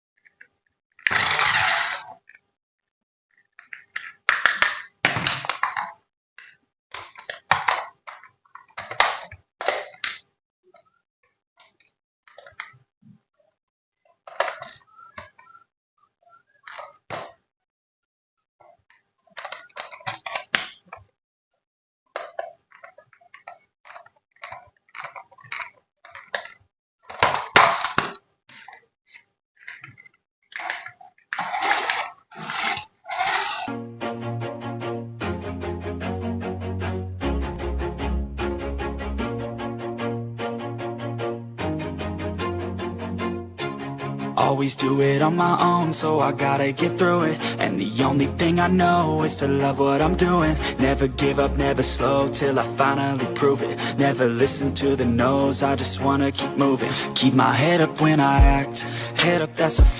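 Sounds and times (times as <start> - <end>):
plastic toy parts clicking: 3.3 - 10.3, 18.9 - 21.1, 22.1 - 33.7
packaging rustling: 22.2 - 33.7.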